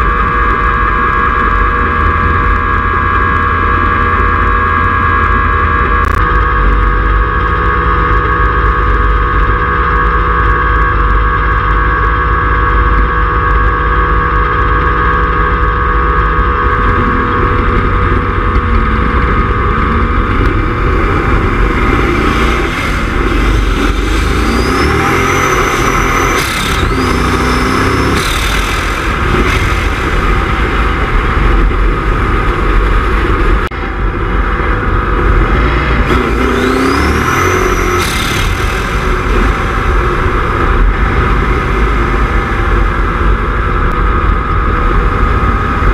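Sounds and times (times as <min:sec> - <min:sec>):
engine revving: 0:00.0 - 0:45.9.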